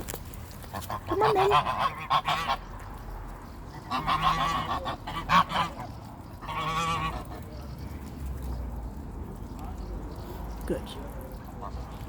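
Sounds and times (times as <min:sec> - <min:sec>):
geese honking: 0:00.7 - 0:02.7, 0:03.7 - 0:07.5.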